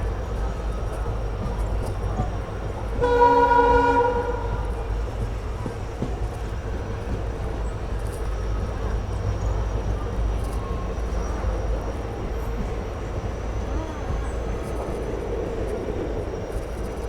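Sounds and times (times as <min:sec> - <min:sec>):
train engine and wheels rumbling: 0:00.0 - 0:17.0
locomotive horn blast: 0:03.0 - 0:04.9.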